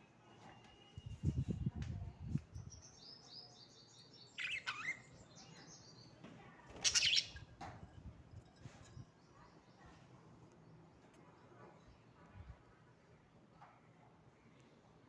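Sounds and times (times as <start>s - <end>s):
high parrot chirps: 4.3s - 5.2s, 6.8s - 7.5s.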